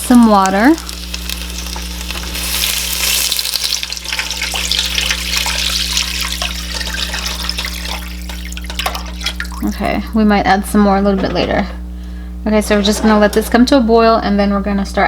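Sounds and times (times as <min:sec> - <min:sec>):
food sizzling and splashing: 0:00.0 - 0:10.0
water poured into hot oil: 0:00.8 - 0:09.6.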